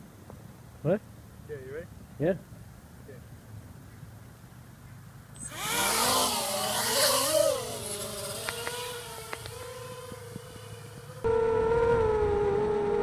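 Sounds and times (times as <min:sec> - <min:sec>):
quadcopter motors whining: 0:05.4 - 0:13.0.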